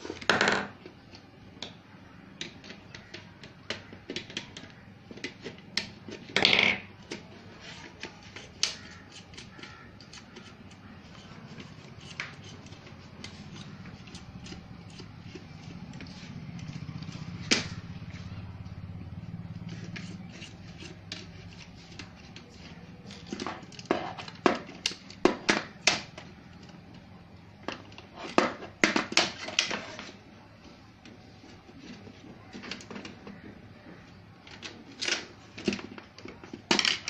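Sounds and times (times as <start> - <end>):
tools and parts clicking: 2.4 - 17.9, 19.5 - 26.9, 34.4 - 37.0.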